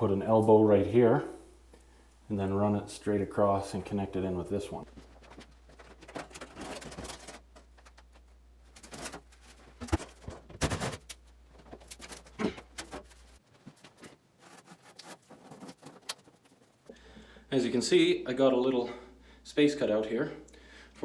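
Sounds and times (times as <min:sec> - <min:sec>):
sheet metal scraping and rustling: 0:11.8 - 0:16.9.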